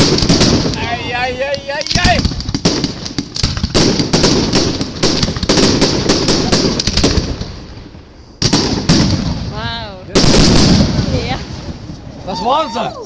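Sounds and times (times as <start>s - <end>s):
fireworks bangs and crackles: 0.0s - 12.8s
loud firework bang: 1.8s - 7.6s.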